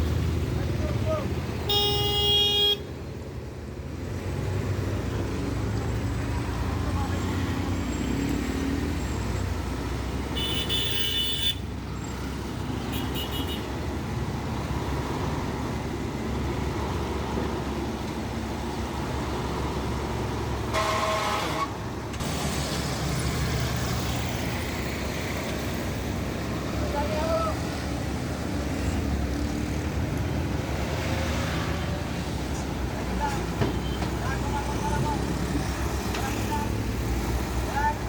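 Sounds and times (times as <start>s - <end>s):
vehicle horn honking: 1.7s - 2.9s, 10.3s - 11.6s, 12.8s - 13.7s, 20.7s - 21.7s.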